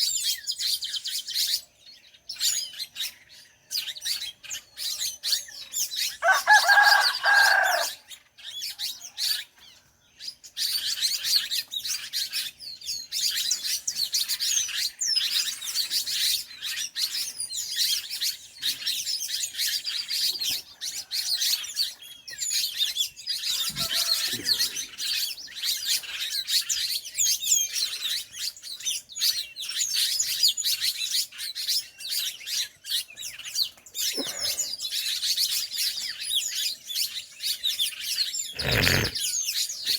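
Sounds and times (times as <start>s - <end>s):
birds chirping and singing: 0.0s - 39.9s
rooster crowing: 6.2s - 8.0s, 23.6s - 24.8s.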